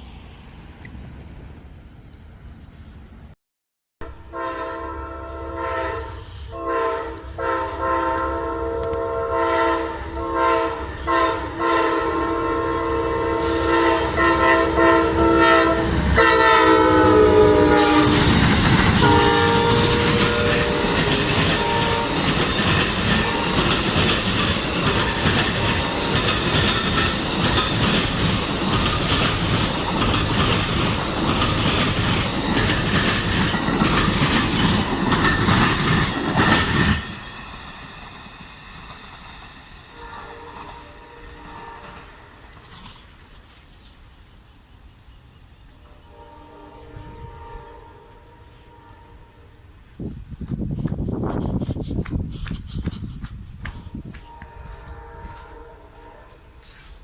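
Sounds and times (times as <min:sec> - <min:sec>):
train rumbling past: 0:00.0 - 0:03.4, 0:04.0 - 0:57.0
locomotive air horn blasts: 0:04.0 - 0:18.3, 0:18.9 - 0:22.4, 0:39.9 - 0:42.2, 0:45.9 - 0:49.6, 0:53.9 - 0:56.9
wheels clacking on rail joints: 0:17.8 - 0:43.4.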